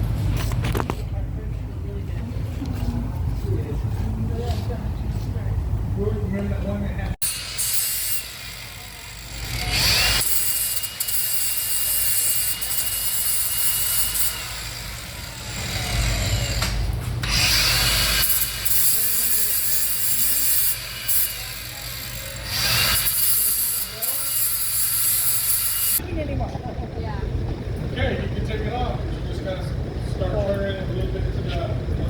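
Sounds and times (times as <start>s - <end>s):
power tool motor whine: 7.2s - 26.0s
tool grinding into metal: 7.2s - 26.0s.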